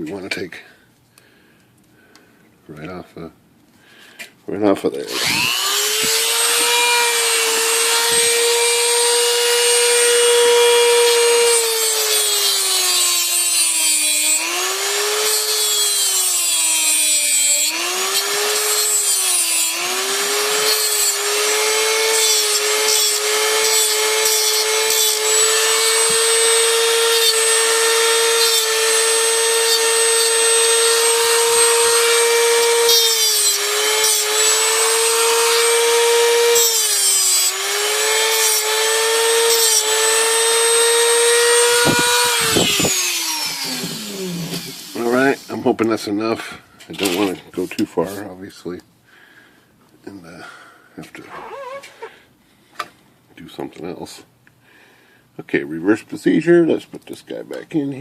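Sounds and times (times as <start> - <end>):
rotary tool grinding metal: 5.0 - 45.6.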